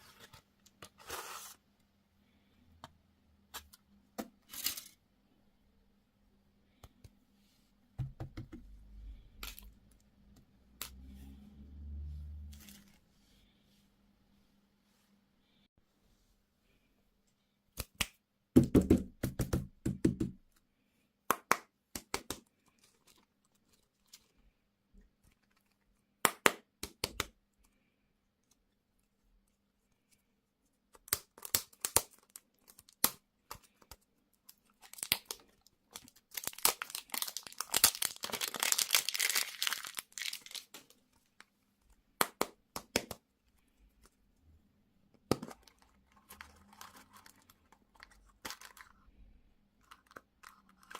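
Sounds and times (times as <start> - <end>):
plastic packaging crinkling: 34.7 - 41.0.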